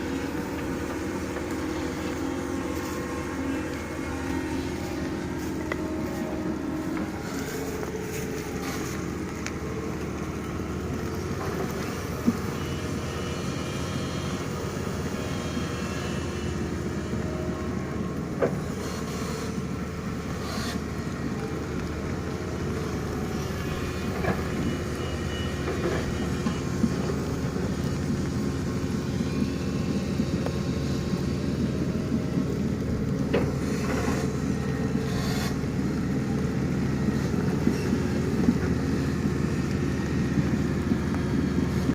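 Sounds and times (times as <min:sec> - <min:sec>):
excavator diesel engine digging: 0:00.0 - 0:41.9.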